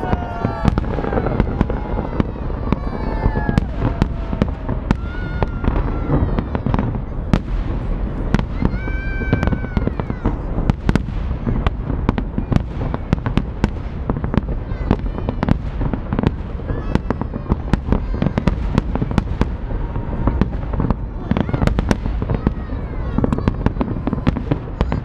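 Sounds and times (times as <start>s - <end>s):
fireworks bangs and crackles: 0.0s - 25.0s.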